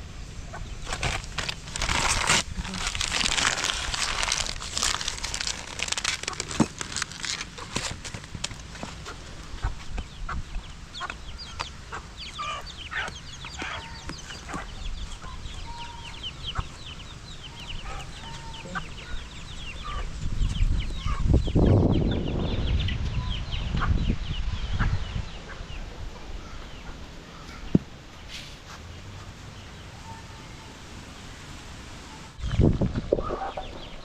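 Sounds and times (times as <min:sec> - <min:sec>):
rustling rush of noise: 0:00.8 - 0:09.9
chickens clucking: 0:08.7 - 0:20.2, 0:33.0 - 0:34.0.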